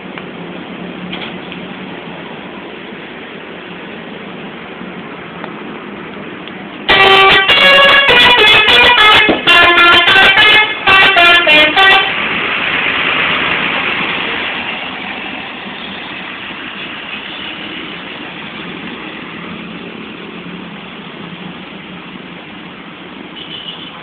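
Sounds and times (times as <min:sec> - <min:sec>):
rushing noise: 0:00.0 - 0:23.4
musical air horn notes: 0:06.9 - 0:12.2.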